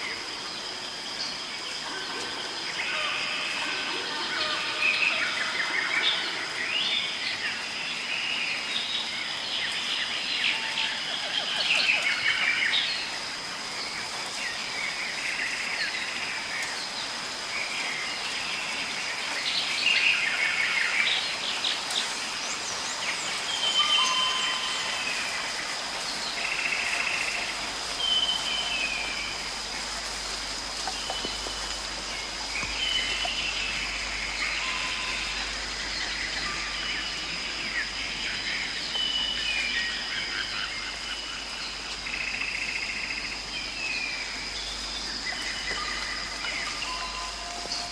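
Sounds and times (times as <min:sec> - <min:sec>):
rain hissing: 0:00.0 - 0:47.9
birds chirping: 0:17.8 - 0:47.9.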